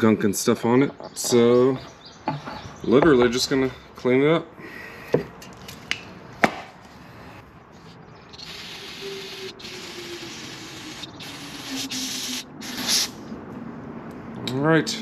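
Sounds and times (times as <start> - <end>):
spray hissing in bursts: 8.4 - 13.2.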